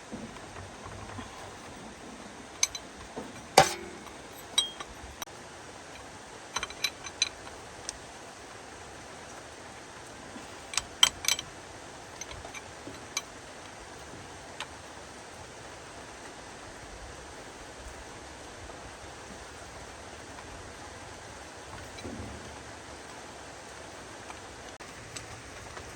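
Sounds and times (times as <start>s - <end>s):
metal hand tools clinking: 2.6s - 5.3s, 6.5s - 7.6s, 10.5s - 11.5s, 12.1s - 13.3s.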